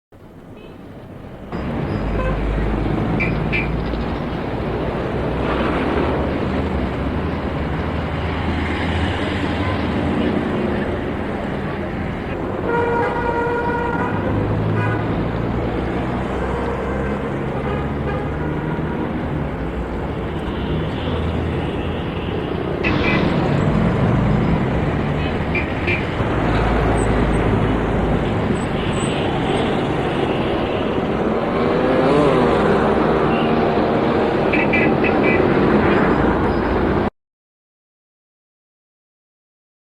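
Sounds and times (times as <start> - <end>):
road traffic rumble: 0.2 - 37.1
vehicle passing close: 22.8 - 28.6, 31.0 - 34.5.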